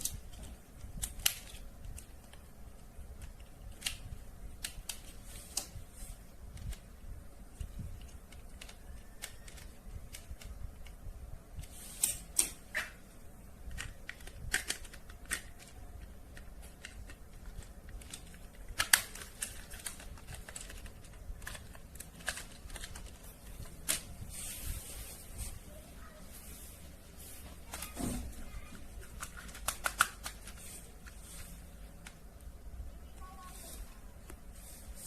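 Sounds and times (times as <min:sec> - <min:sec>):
sharp plastic snaps: 0:00.0 - 0:05.8, 0:07.5 - 0:13.0, 0:13.6 - 0:24.1, 0:27.7 - 0:30.7.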